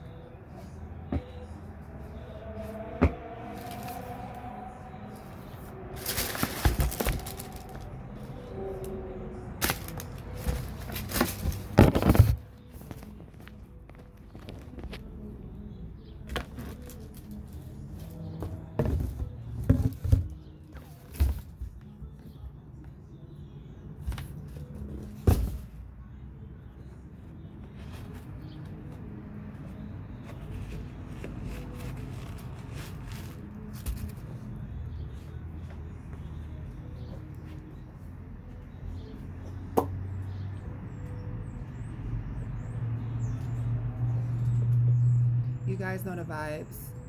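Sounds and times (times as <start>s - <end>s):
background music with low line: 0.0s - 47.0s
handling thumps and knocks: 6.0s - 7.8s, 9.6s - 15.0s, 18.3s - 21.9s.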